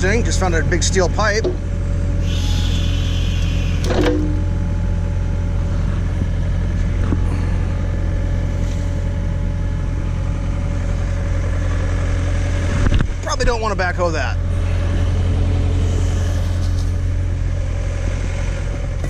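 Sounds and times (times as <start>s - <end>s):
tractor engine running: 0.0s - 19.0s
high hiss: 2.2s - 4.0s.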